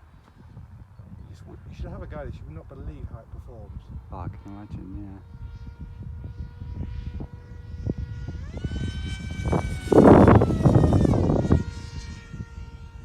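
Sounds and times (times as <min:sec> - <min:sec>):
model plane motor whining: 0:04.4 - 0:13.0.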